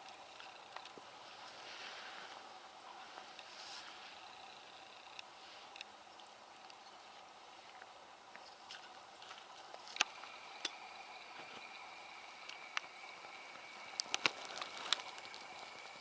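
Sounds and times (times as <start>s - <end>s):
faint high-pitched tone: 10.0s - 16.0s.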